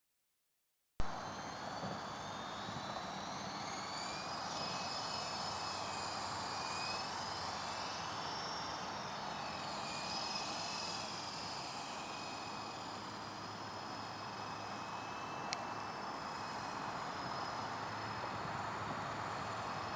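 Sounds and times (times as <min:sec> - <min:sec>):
high motor whines: 0:01.0 - 0:19.9
helicopter rotor rush: 0:01.1 - 0:19.9.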